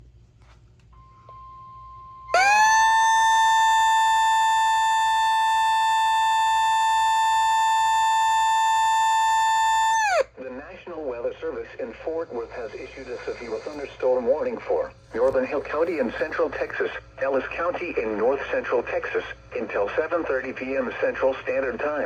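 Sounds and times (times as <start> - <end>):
faint steady tone: 0.9 - 9.8
buzzing alarm tone sweeping up: 2.2 - 10.2.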